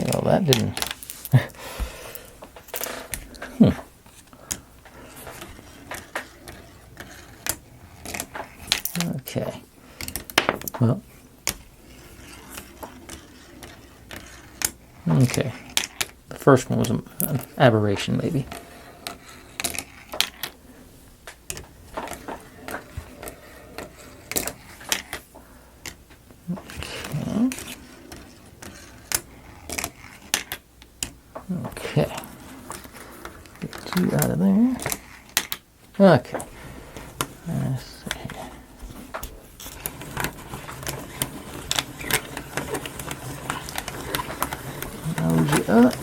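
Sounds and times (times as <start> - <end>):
marbles rolling down wooden track: 4.8 - 20.6, 21.5 - 25.2, 25.8 - 30.6, 36.2 - 46.0.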